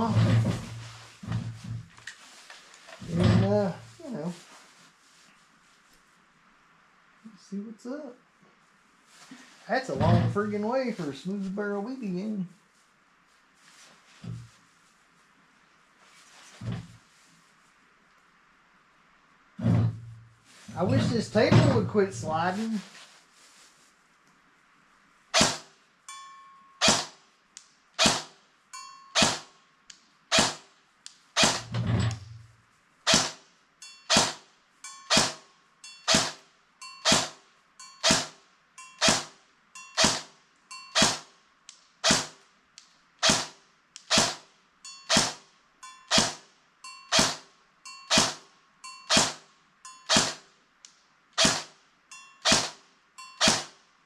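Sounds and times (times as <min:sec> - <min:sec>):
air gun shots cracking: 0:25.4 - 0:25.7, 0:26.8 - 0:27.2, 0:28.0 - 0:28.3, 0:29.2 - 0:29.5, 0:30.3 - 0:30.6, 0:31.4 - 0:31.6, 0:33.1 - 0:33.4, 0:34.1 - 0:34.4, 0:35.1 - 0:35.4, 0:38.0 - 0:38.3, 0:39.0 - 0:39.3, 0:40.0 - 0:40.3, 0:41.0 - 0:41.3, 0:42.0 - 0:42.4, 0:43.2 - 0:44.4, 0:45.1 - 0:45.4, 0:46.1 - 0:46.4, 0:47.2 - 0:47.4, 0:48.1 - 0:48.4, 0:49.1 - 0:49.4, 0:50.1 - 0:50.4, 0:51.4 - 0:51.7, 0:52.4 - 0:52.8, 0:53.4 - 0:53.7.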